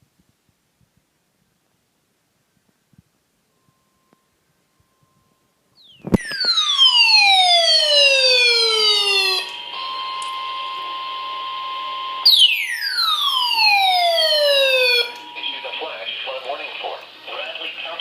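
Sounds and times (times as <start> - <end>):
electronic siren tone sliding down: 5.8 - 15.3.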